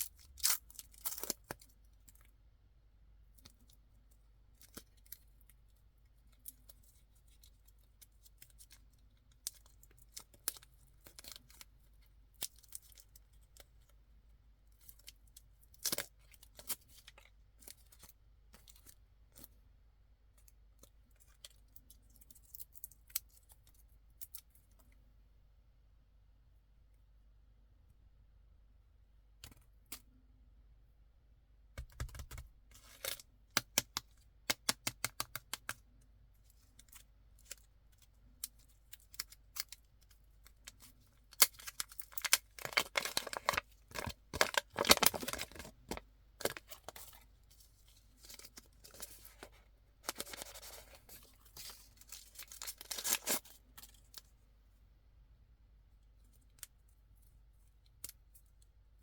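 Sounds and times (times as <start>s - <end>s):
plastic wrapper crinkling and tearing: 40.5s - 54.3s.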